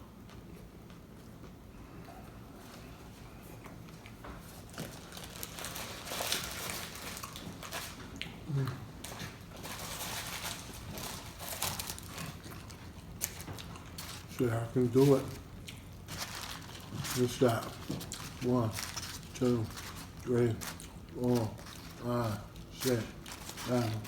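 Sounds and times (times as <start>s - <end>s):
chewing food: 0.2s - 24.0s
paper wrappers crinkling: 4.6s - 8.2s, 9.0s - 24.0s
humming voice: 8.4s - 9.0s.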